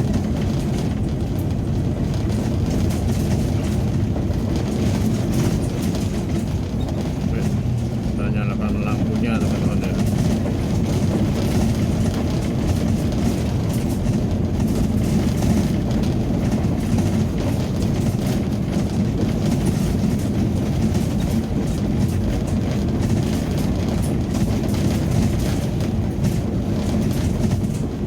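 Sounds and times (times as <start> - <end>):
engine and tyre rumble: 0.0 - 28.0.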